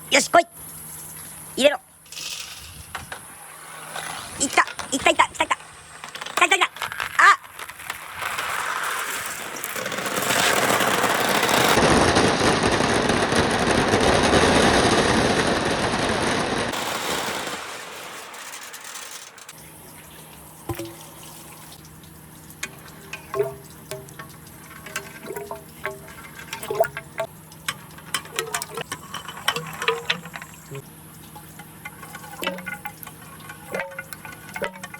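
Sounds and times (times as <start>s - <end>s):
marbles clicking and clinking: 2.0s - 11.8s, 22.8s - 30.8s
water and marbles rushing down: 2.1s - 34.9s.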